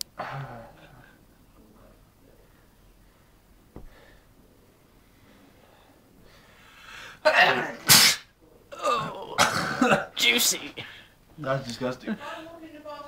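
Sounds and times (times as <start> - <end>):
man sneezing: 7.2 - 10.1.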